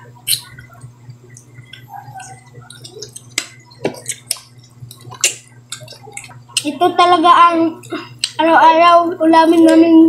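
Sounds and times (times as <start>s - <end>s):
steady low hum: 0.0s - 10.0s
clicks and smacks of eating: 0.2s - 6.8s, 7.8s - 8.4s, 9.6s - 9.8s.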